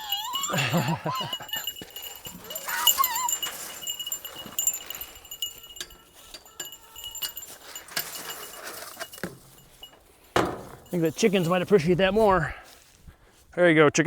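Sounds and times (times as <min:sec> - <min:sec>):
goat bleating: 0:00.0 - 0:07.6
light clinks and taps: 0:00.0 - 0:11.5.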